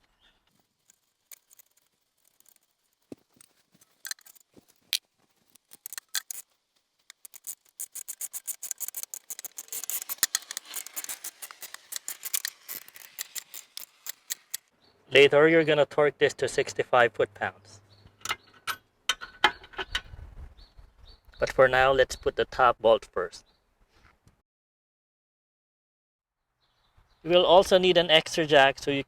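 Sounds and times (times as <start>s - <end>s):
ratchet wrench clicking: 7.0s - 14.7s.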